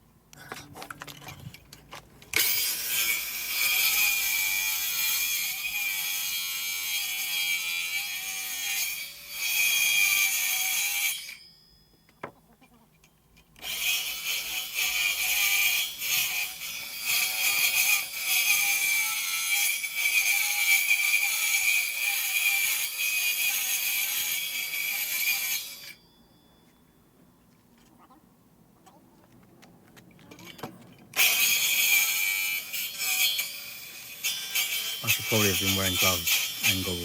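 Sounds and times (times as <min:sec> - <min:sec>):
power tool running under load: 0:31.2 - 0:37.0.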